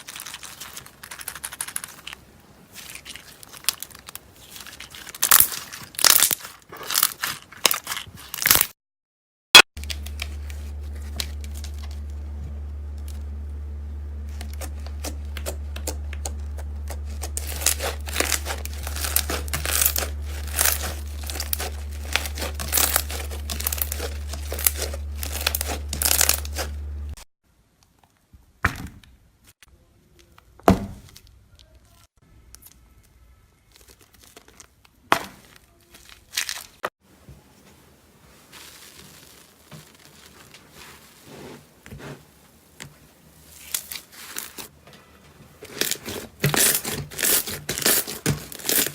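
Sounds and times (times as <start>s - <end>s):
slime crackling and popping: 0.0s - 8.7s, 14.3s - 26.7s
low hum: 9.8s - 27.2s.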